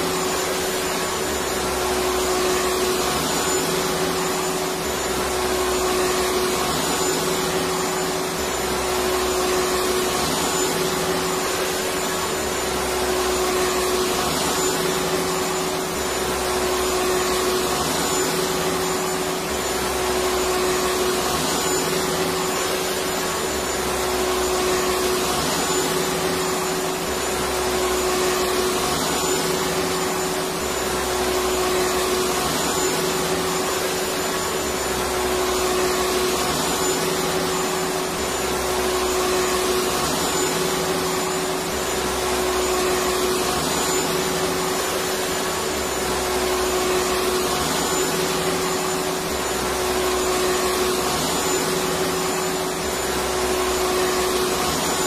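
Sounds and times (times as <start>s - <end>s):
vacuum cleaner running: 0.0s - 55.0s.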